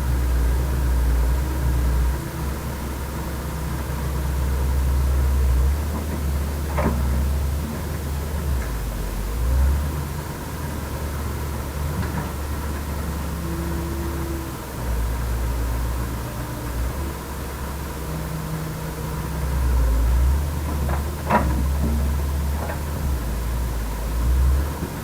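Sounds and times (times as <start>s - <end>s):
heavy diesel engine rumbling: 0.0s - 25.0s.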